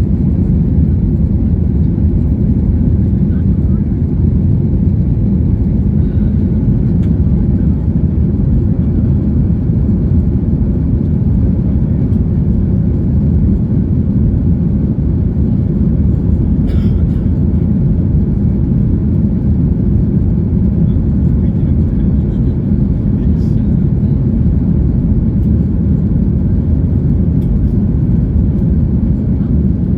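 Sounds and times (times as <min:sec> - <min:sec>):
jet engine cabin rumble: 0:00.0 - 0:29.9.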